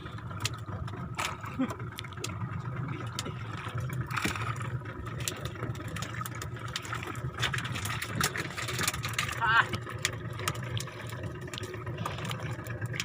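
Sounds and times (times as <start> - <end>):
boat engine running: 0.0 - 13.0.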